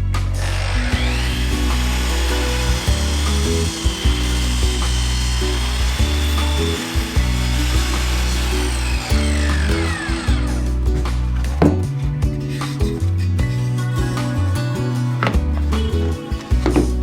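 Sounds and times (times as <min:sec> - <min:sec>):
background music: 0:00.0 - 0:17.0
power tool motor whining: 0:00.4 - 0:10.8.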